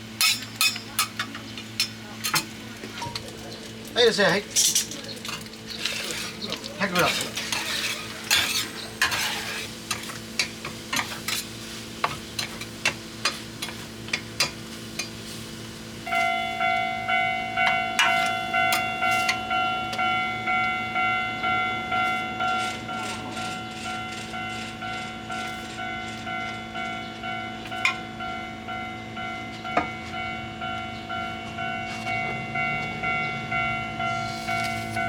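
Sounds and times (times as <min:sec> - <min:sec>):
metal spatulas clacking on griddle: 0:00.2 - 0:03.3, 0:04.5 - 0:15.2, 0:18.0 - 0:19.4
meat sizzling: 0:03.2 - 0:17.0.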